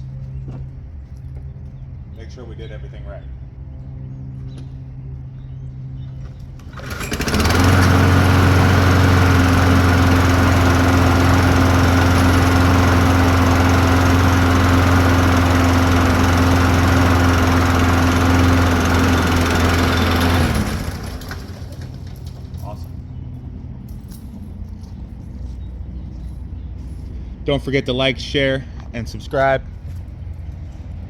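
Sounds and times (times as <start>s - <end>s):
lawn mower engine running: 6.4s - 22.8s.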